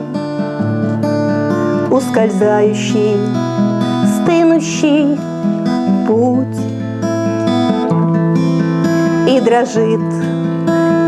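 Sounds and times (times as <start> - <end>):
acoustic guitar: 0.0 - 11.0
person singing: 1.8 - 3.4, 4.0 - 6.7, 9.2 - 10.3.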